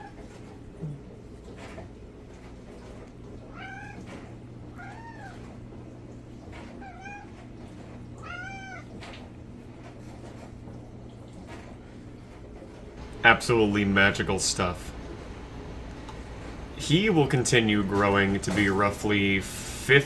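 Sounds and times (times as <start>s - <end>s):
cat meowing: 3.5s - 5.5s, 6.8s - 7.4s, 8.2s - 9.0s.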